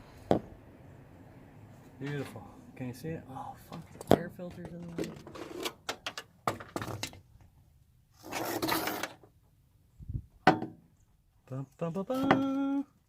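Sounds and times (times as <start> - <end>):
thump: 0.3 - 0.5, 10.4 - 10.8
rustle: 4.9 - 12.9.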